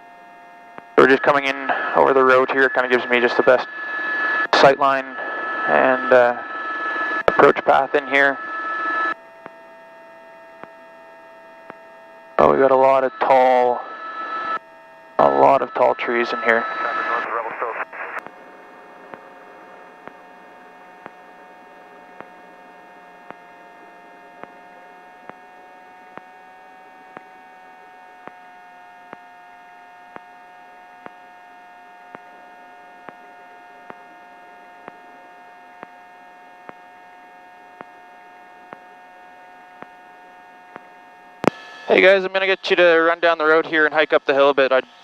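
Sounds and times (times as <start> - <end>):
electrical hum and whine: 0.0 - 45.0.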